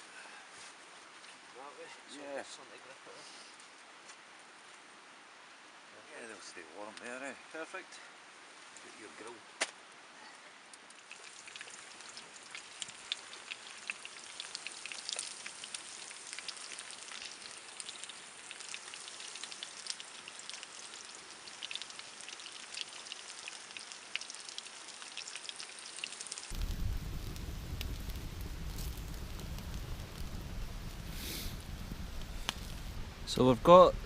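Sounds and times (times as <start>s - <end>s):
campfire crackling and sizzling: 8.4s - 34.0s.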